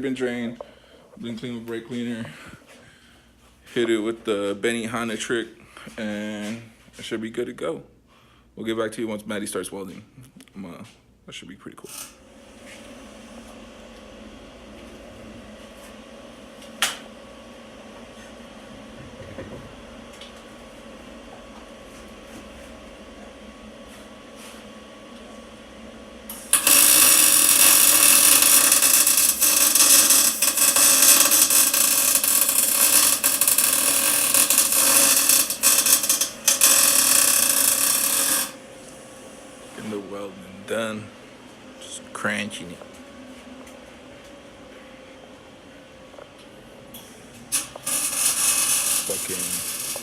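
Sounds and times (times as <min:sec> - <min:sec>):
faint steady hum: 0:00.0 - 0:50.0
welding arc crackling sizzle: 0:26.2 - 0:39.4, 0:47.0 - 0:50.0.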